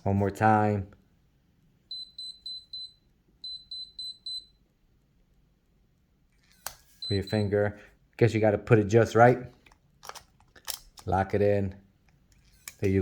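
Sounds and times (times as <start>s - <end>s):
lock click: 9.7s - 11.1s.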